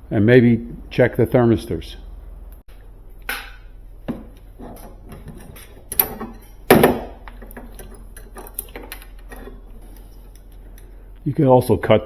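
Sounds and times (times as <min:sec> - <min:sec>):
hand tools clicking and knocking: 0:04.1 - 0:09.7.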